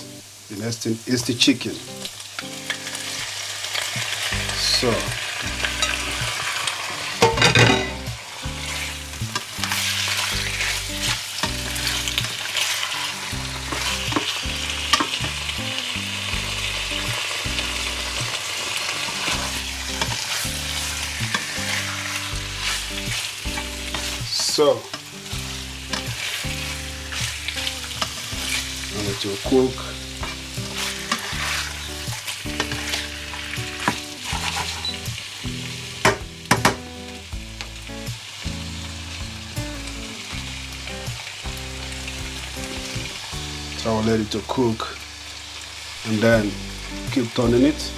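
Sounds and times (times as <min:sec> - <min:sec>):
chicken sizzling in a pan: 0:00.0 - 0:47.9
spoon scraping a pan: 0:05.7 - 0:15.3, 0:19.0 - 0:24.2, 0:30.2 - 0:35.2.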